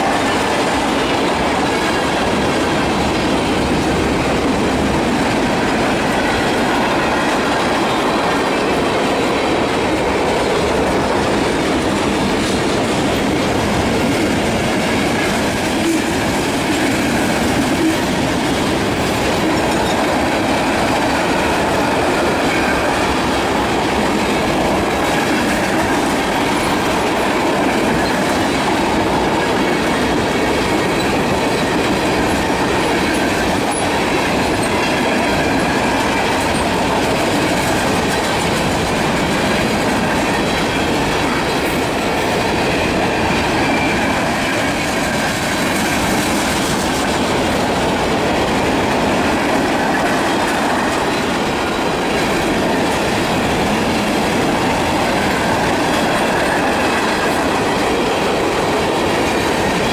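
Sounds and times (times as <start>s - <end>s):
train wheels clattering on rails: 0.0s - 59.9s.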